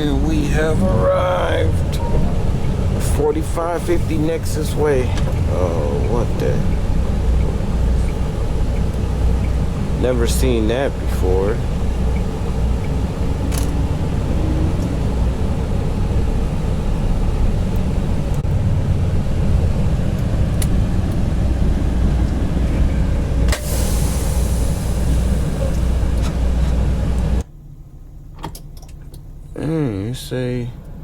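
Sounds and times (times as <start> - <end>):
diesel truck engine rumble: 0.0 - 31.0
short air hiss: 23.5 - 26.0.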